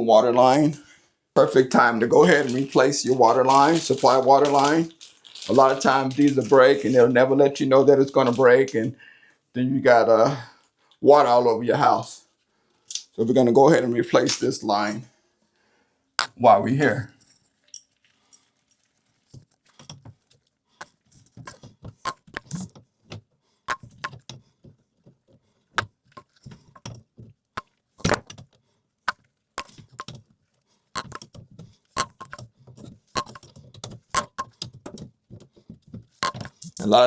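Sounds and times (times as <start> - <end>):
clinks of tools and fittings: 31.0 - 31.4, 33.2 - 35.0, 36.2 - 36.9.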